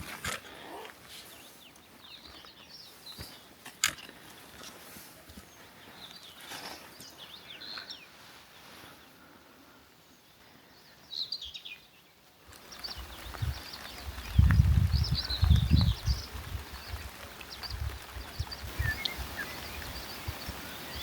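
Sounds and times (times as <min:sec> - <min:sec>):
faint outdoor hush: 0:00.0 - 0:14.4
wild birds chirping: 0:00.0 - 0:21.0.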